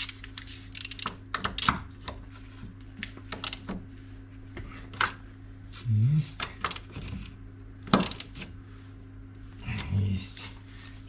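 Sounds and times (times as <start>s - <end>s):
ratchet wrench clicking: 0.0s - 1.7s
low steady hum: 0.0s - 11.0s.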